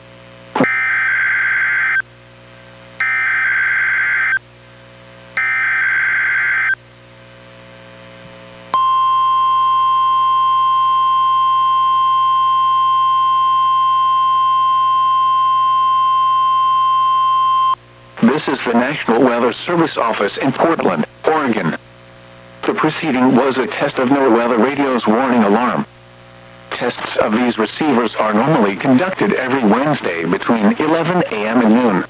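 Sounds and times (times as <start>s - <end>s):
warning alarm tone: 0.6s - 2.0s, 3.0s - 4.4s, 5.4s - 6.8s, 8.8s - 17.8s.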